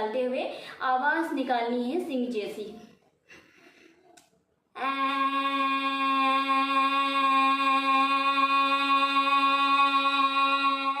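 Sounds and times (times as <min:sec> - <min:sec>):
woman holding long open tone: 0:04.8 - 0:11.0.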